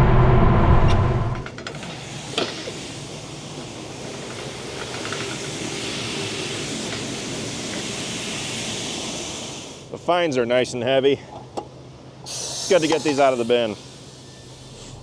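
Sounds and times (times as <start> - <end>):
faint motor hum: 0.0 - 15.0
beans pouring hiss: 1.8 - 9.9, 12.3 - 15.0.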